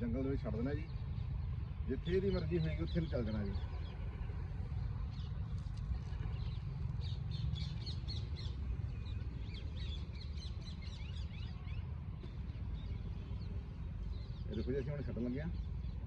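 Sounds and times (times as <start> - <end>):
small birds chirping: 0.0 - 16.0
steady low rumble: 0.0 - 16.0.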